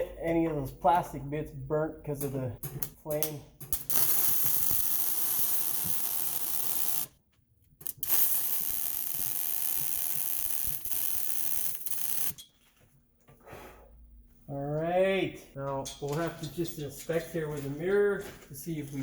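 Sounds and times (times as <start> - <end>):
arc welding crackling hiss: 2.2 - 7.2, 7.8 - 12.4.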